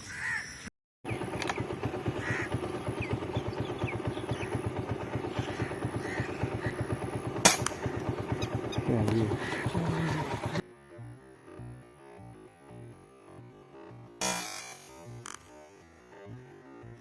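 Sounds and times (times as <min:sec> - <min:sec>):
small engine running: 0:01.0 - 0:17.0
sharp click: 0:07.4 - 0:08.1.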